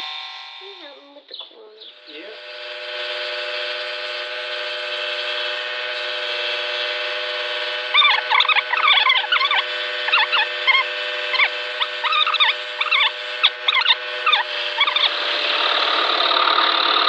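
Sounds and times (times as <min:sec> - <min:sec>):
scroll saw cutting plywood: 0:02.4 - 0:17.0
high chirping squeaks: 0:07.9 - 0:15.1.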